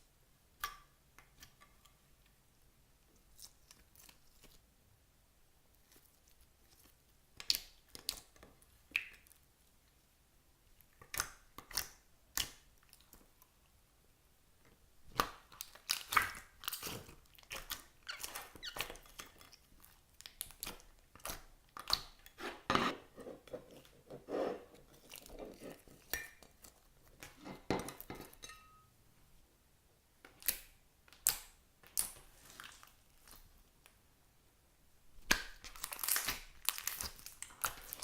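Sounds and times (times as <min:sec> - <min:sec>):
crunchy slime crackling and popping: 0:15.1 - 0:22.3, 0:35.2 - 0:38.0.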